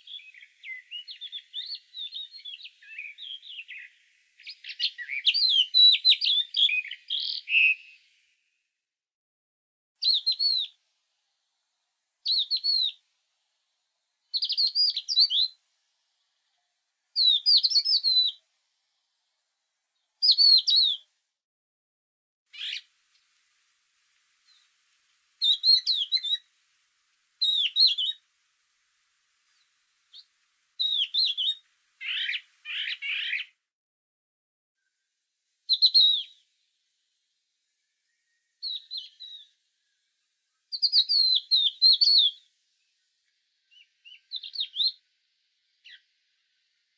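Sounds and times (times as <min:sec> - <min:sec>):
songbird singing: 0:00.0 - 0:08.2, 0:10.0 - 0:10.8, 0:12.2 - 0:13.1, 0:14.3 - 0:15.6, 0:16.2 - 0:18.5, 0:20.0 - 0:21.1, 0:22.5 - 0:23.3, 0:25.4 - 0:26.6, 0:27.4 - 0:28.3, 0:29.4 - 0:33.6, 0:35.7 - 0:36.5, 0:37.8 - 0:46.9
rough bird call: 0:22.6 - 0:22.9, 0:30.1 - 0:33.6.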